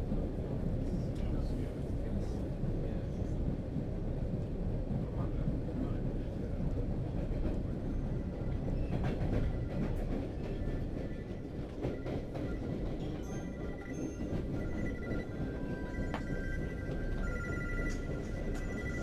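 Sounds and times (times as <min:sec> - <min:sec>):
train wheels rumbling on track: 0:00.0 - 0:19.0.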